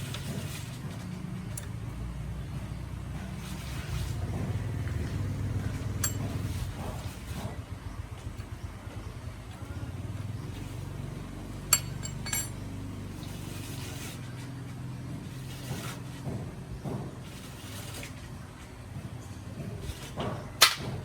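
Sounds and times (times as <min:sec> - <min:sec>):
low mechanical hum: 0:00.0 - 0:21.0
sharp metallic clinks: 0:06.0 - 0:06.5, 0:11.7 - 0:12.6.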